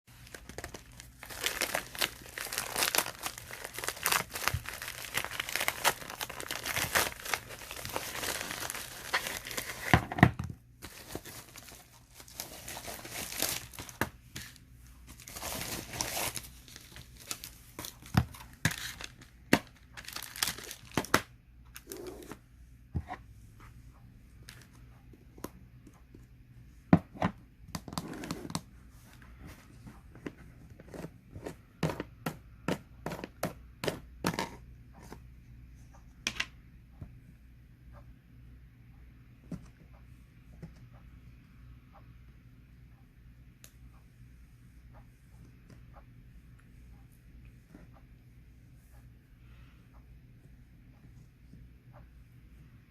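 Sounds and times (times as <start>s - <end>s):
crinkling and crackling by hand: 0.1s - 36.3s.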